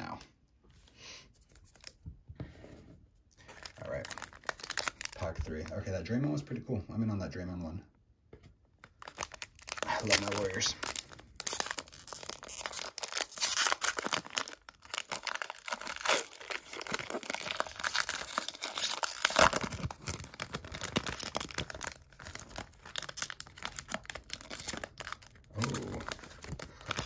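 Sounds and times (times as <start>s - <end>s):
plastic wrapper crinkling and tearing: 1.4s - 2.0s, 3.4s - 6.1s, 8.8s - 27.0s.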